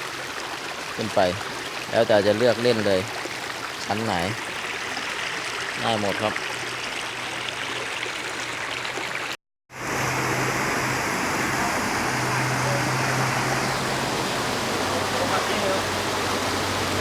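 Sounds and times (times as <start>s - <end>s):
water rushing down waterfall: 0.0s - 6.4s, 8.4s - 17.0s.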